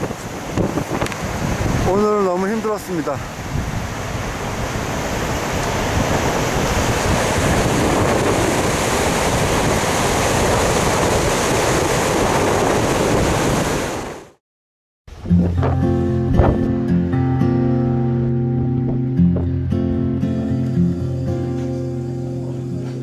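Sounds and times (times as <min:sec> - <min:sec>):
wind buffeting microphone: 0:00.0 - 0:14.3, 0:15.2 - 0:16.8
ocean surf: 0:00.0 - 0:14.4, 0:15.1 - 0:23.0
acoustic guitar music: 0:15.1 - 0:23.0.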